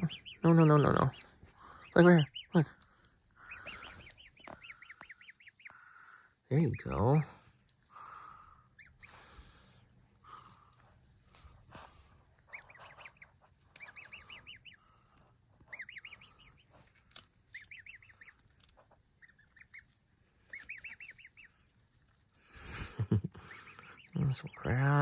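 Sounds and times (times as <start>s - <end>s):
gosling peeping: 0.0s - 25.0s.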